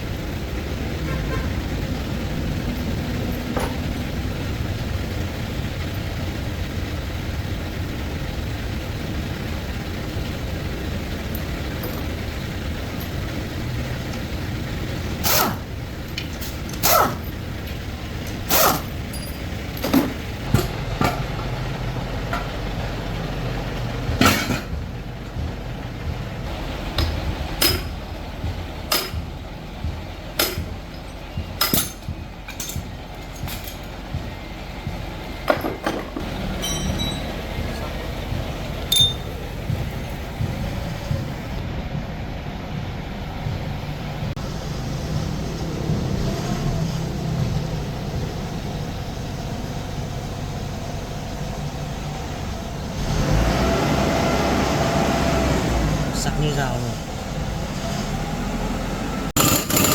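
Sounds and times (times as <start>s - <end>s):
steady low rumble: 0.0s - 53.1s
metal tools clinking and knocking: 16.1s - 21.2s, 30.4s - 34.0s, 35.5s - 38.0s, 38.8s - 40.2s, 59.4s - 59.9s.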